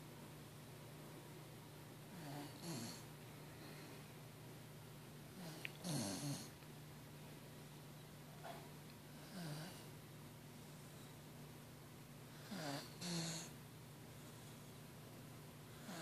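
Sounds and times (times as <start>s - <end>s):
steady low hum: 0.0s - 16.0s
dog snoring: 2.1s - 3.1s, 5.3s - 6.5s, 9.1s - 9.9s, 12.3s - 13.6s, 15.7s - 16.0s.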